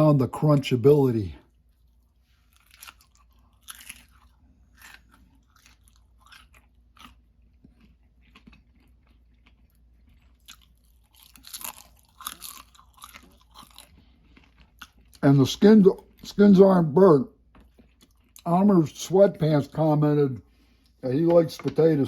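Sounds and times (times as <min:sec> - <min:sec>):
crunchy chewing: 0:01.5 - 0:15.2, 0:17.4 - 0:18.5.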